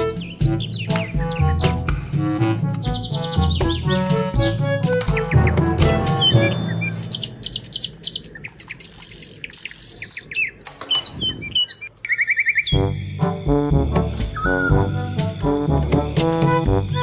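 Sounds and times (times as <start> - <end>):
background music: 0.0 - 8.2, 12.7 - 17.0
birds chirping: 0.0 - 12.9.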